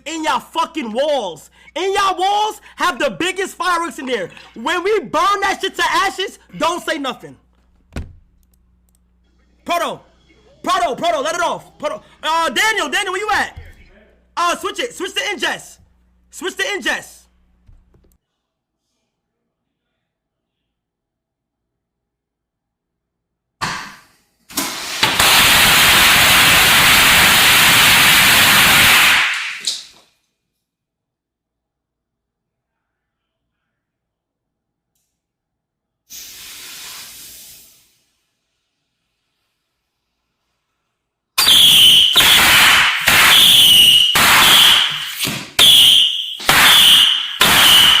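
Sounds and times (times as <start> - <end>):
firework bangs: 24.5 - 29.7, 41.4 - 48.0
firework hissing rush: 24.5 - 29.7, 36.1 - 38.2, 41.4 - 48.0.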